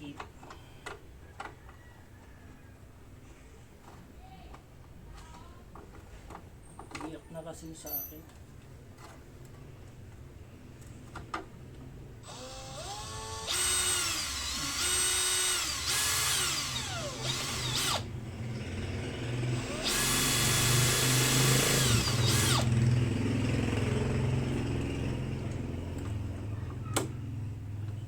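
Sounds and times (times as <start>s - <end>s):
power drill whining: 12.2s - 18.7s, 19.5s - 22.8s.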